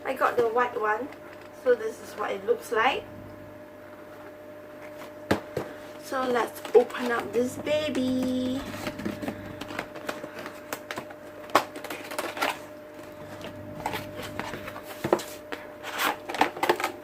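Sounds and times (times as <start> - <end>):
cardboard packaging handled: 8.0 - 13.2, 13.8 - 17.0.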